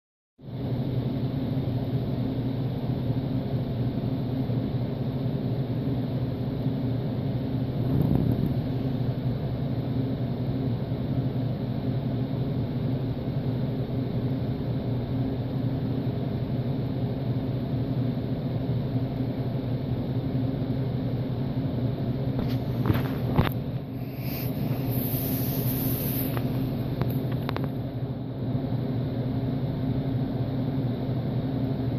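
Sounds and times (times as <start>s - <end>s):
motor humming: 22.4s - 27.6s.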